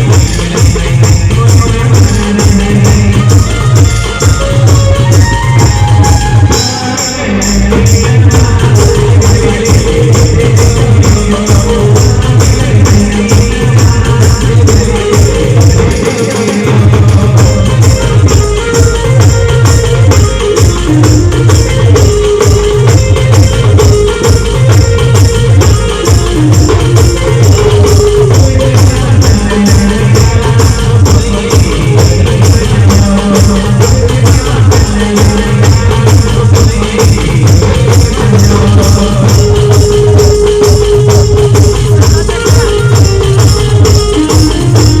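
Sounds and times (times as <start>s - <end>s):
band melody: 0.0s - 45.0s
driving drum beat: 0.0s - 45.0s
jingling cymbals or tambourine: 17.3s - 45.0s.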